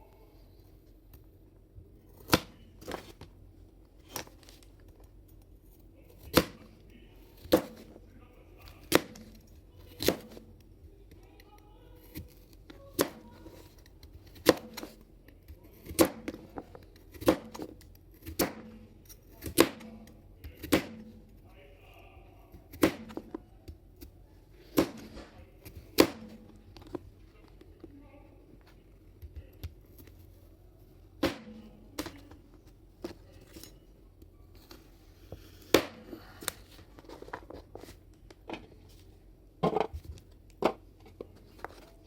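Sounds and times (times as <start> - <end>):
blade chopping wood: 6.3 - 6.7, 7.4 - 8.0, 8.8 - 10.5, 14.3 - 15.0, 15.8 - 18.8, 19.4 - 21.3, 22.7 - 23.4, 24.7 - 26.6, 31.2 - 32.2, 35.6 - 36.2.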